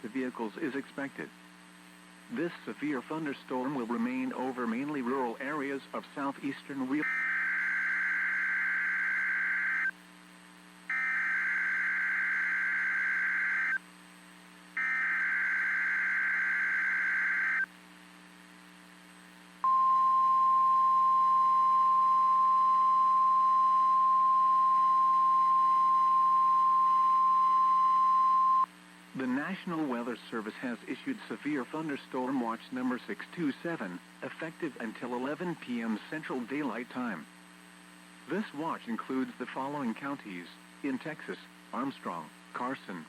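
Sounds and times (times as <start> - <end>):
steady high-pitched alarm tone: 7.0 - 9.9, 10.9 - 13.8, 14.8 - 17.7.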